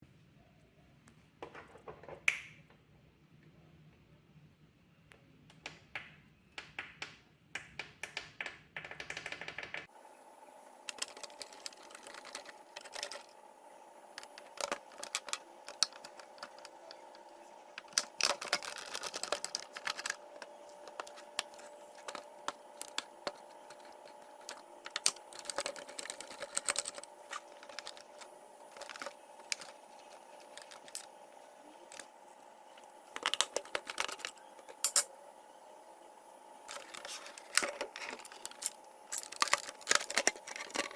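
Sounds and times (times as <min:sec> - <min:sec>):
faint steady hum: 0:00.0 - 0:40.9
small hard objects clicking: 0:14.2 - 0:31.1.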